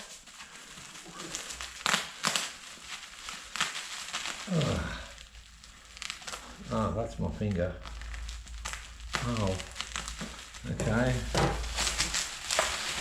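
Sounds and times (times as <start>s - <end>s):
plastic wrap crinkling: 0.0s - 13.0s.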